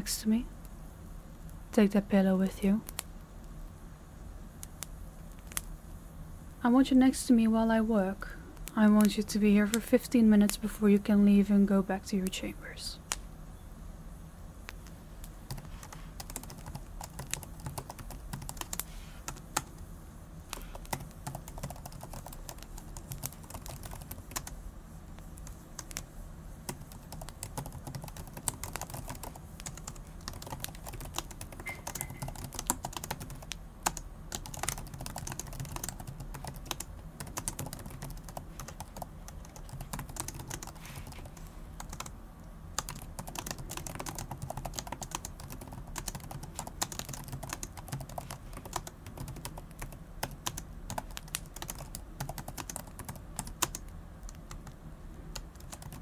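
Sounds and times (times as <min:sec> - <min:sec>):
laptop keyboard typing: 0:14.8 - 0:19.9, 0:20.5 - 0:24.6, 0:25.2 - 0:42.1, 0:42.8 - 0:56.0.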